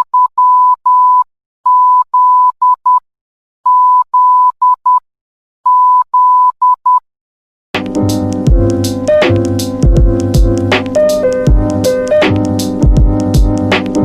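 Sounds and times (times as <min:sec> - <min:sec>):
morse code beeps: 0:00.0 - 0:03.0, 0:03.7 - 0:05.0, 0:05.7 - 0:07.0
music: 0:07.8 - 0:14.0.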